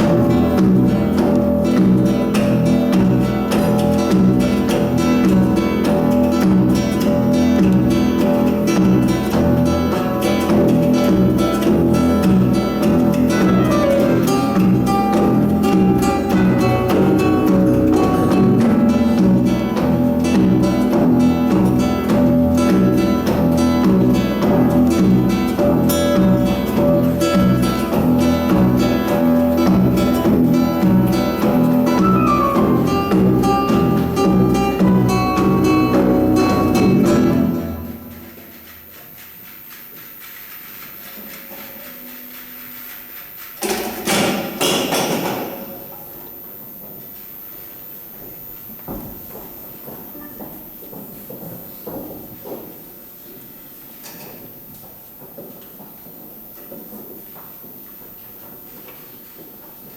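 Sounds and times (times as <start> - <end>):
strummed acoustic guitar: 0.0 - 39.0.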